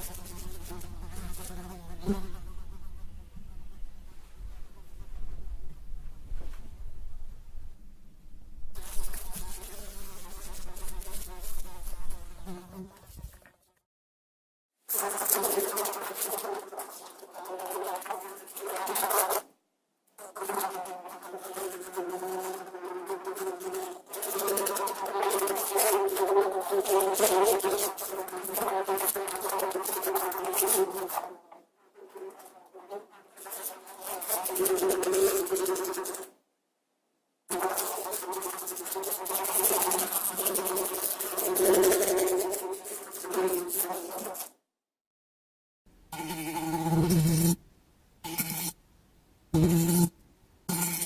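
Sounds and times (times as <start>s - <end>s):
fly buzzing: 0.0s - 3.1s, 8.8s - 13.5s, 14.9s - 19.4s, 20.2s - 31.3s, 32.0s - 36.3s, 37.5s - 44.6s, 46.2s - 47.6s, 48.2s - 48.8s, 49.6s - 50.1s, 50.7s - 51.0s.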